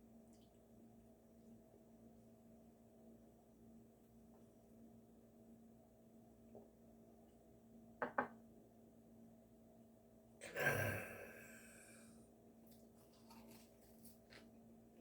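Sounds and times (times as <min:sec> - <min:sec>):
man sighing: 0:10.4 - 0:12.1.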